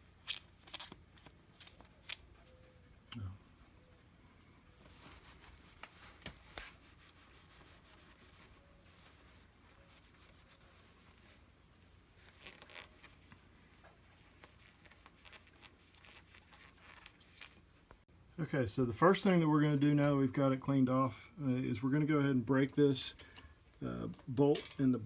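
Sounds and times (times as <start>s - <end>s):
faint scratching and rubbing: 4.8s - 18.0s.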